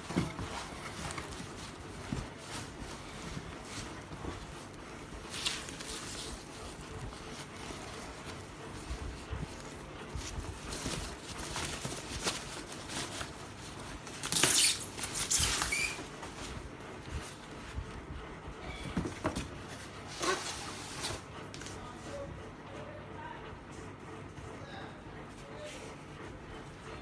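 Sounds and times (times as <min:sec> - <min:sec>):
packaging rustling: 0:00.0 - 0:17.3
crinkly rustle: 0:00.0 - 0:18.0.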